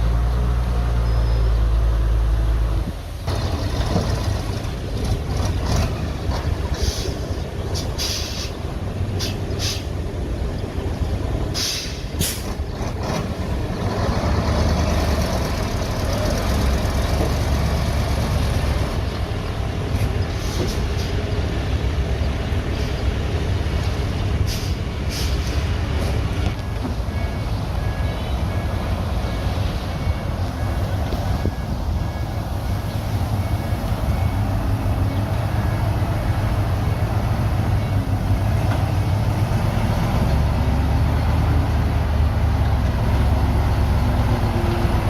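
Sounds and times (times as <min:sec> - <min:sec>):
diesel earthmoving machinery: 0:00.0 - 0:45.0
short hissing bursts: 0:08.0 - 0:08.6, 0:11.6 - 0:12.4.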